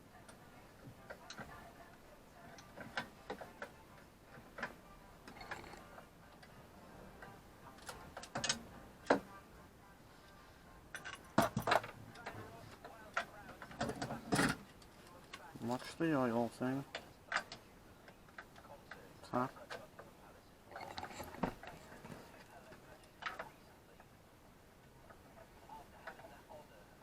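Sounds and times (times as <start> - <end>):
hand tools clicking and knocking: 2.5 - 6.5, 10.9 - 16.0.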